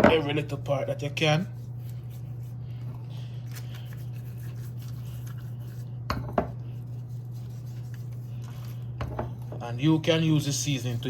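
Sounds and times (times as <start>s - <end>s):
steady low hum: 0.0s - 11.0s
hands rubbing seasoning into fish: 1.5s - 6.0s, 6.6s - 9.0s.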